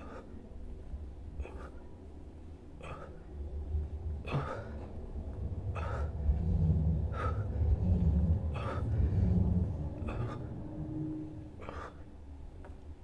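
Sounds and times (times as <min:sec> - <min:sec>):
low rumble: 0:00.5 - 0:13.0
person breathing hard: 0:02.8 - 0:12.4.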